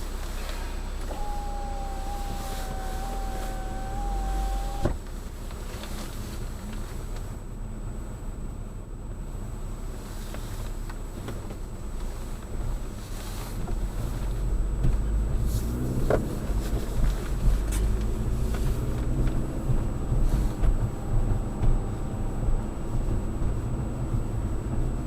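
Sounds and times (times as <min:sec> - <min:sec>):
car engine and road rumble: 0:00.0 - 0:25.0.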